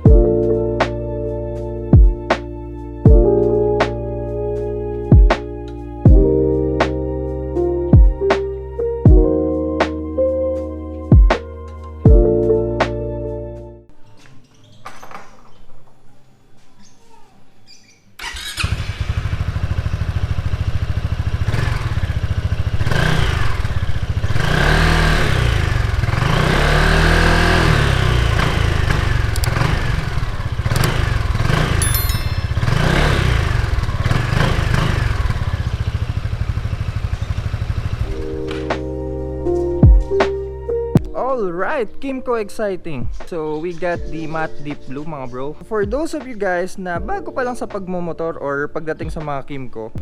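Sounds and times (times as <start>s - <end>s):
scooter engine starting and idling: 18.2s - 38.6s.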